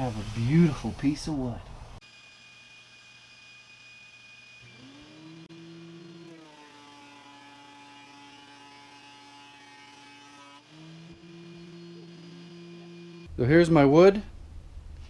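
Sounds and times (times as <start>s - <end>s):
planer motor humming: 2.6s - 13.3s.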